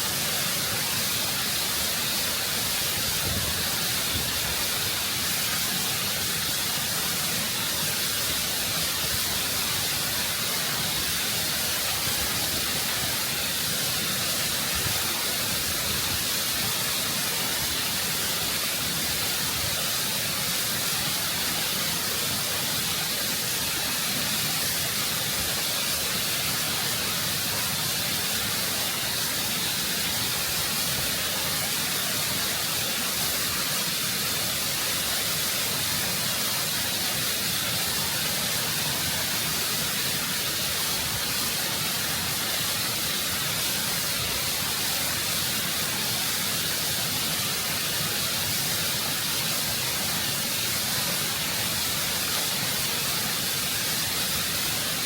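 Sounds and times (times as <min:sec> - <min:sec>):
waterfall rushing over rock: 0:00.0 - 0:55.0.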